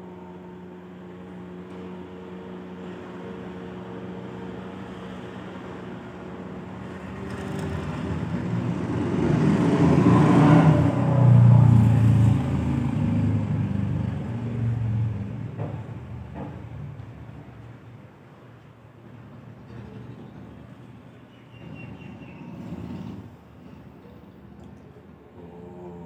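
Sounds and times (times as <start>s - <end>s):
vehicle passing by: 4.3s - 16.1s.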